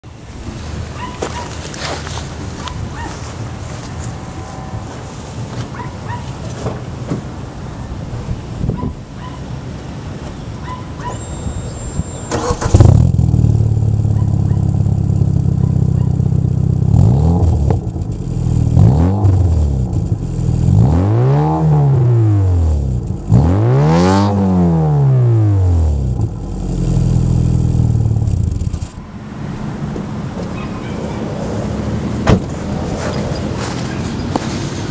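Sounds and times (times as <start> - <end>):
car engine starting and revving: 12.2 - 34.9.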